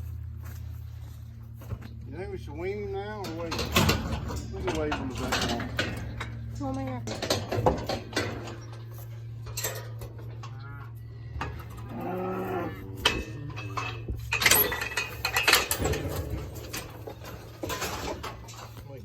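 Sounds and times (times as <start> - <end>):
steady low hum: 0.0 - 19.0
metal gates clanking and rattling: 0.6 - 19.0
calf bawling: 10.3 - 14.6.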